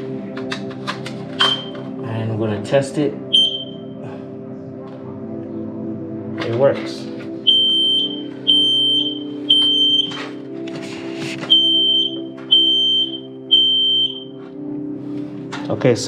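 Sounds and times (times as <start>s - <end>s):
background music: 0.0s - 16.0s
smoke alarm beeps: 1.4s - 1.8s, 3.3s - 4.0s, 7.4s - 10.3s, 11.5s - 14.4s.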